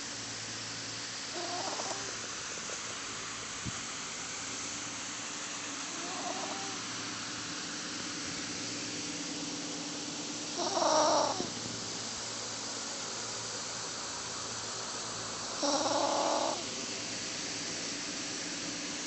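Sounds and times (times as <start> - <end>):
background hiss: 0.0 - 19.0
dog snoring squeakily: 1.3 - 2.2, 5.9 - 6.8, 10.5 - 11.6, 15.5 - 16.7.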